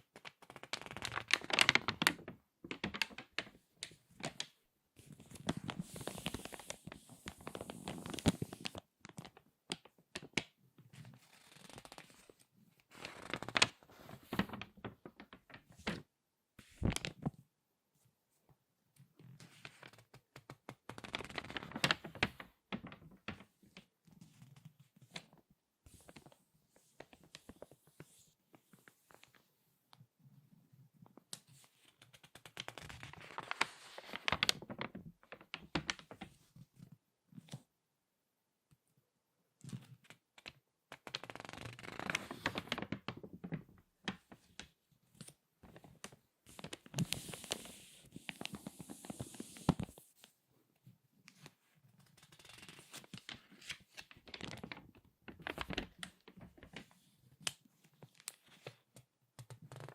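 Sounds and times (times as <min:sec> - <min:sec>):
magazine pages crinkling: 0:13.0 - 0:16.0, 0:32.0 - 0:36.2, 0:41.0 - 0:43.2, 0:46.0 - 0:50.0, 0:52.1 - 0:58.8.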